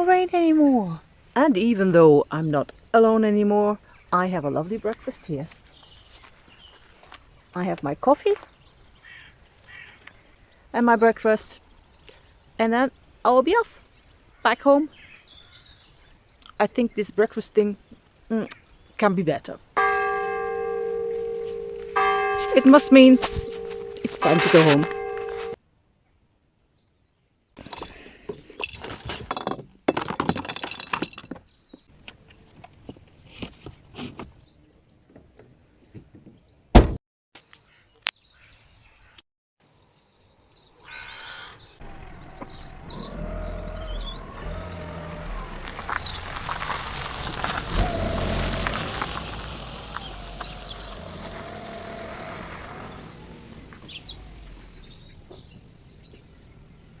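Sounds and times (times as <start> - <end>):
car low rumble: 19.8 - 25.6, 41.8 - 57.0
rustling and clatter: 27.6 - 34.4, 41.8 - 55.5.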